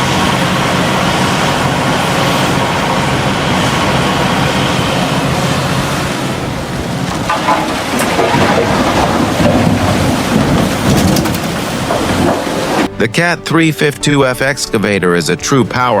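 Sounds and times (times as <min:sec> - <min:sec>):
excavator diesel engine: 0:00.0 - 0:16.0
scattered clatter: 0:07.0 - 0:12.9.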